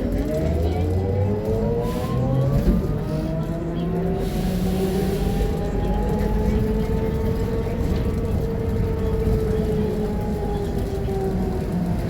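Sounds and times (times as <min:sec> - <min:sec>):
bus diesel engine under load: 0:00.0 - 0:12.0.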